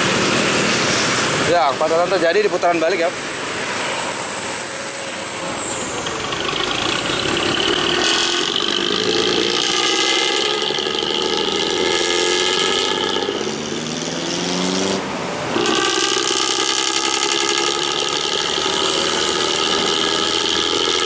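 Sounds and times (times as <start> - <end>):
bus engine revving: 4.6 - 21.0.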